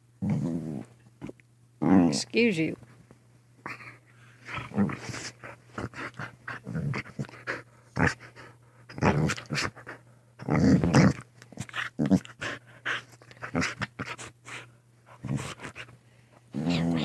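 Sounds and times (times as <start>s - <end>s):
dog growling: 0.2s - 0.9s, 3.7s - 15.9s, 16.5s - 17.0s
dog panting: 11.7s - 15.9s.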